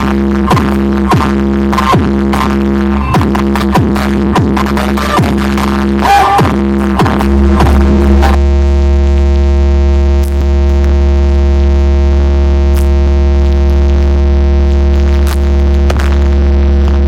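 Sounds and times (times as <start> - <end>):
deep bass note: 0.0 - 17.0
loud electronic music: 0.0 - 17.0
synthesizer tones: 4.4 - 8.5.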